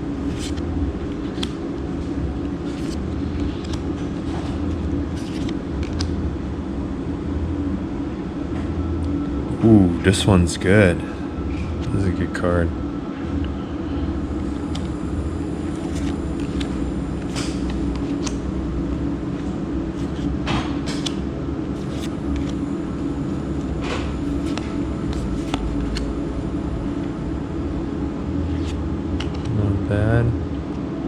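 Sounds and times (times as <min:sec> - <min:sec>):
low mechanical hum: 0:00.0 - 0:31.0
trading cards swishing: 0:00.2 - 0:01.6, 0:02.6 - 0:06.1, 0:14.4 - 0:18.4, 0:20.0 - 0:20.3, 0:21.8 - 0:22.8, 0:23.8 - 0:26.2.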